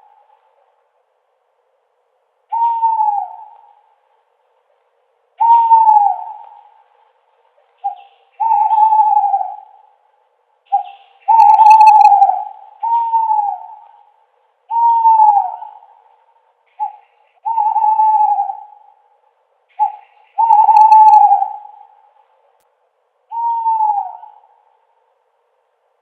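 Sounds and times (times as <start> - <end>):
owl hooting: 0.0 - 0.7, 2.5 - 4.1, 5.4 - 22.4, 23.3 - 25.0.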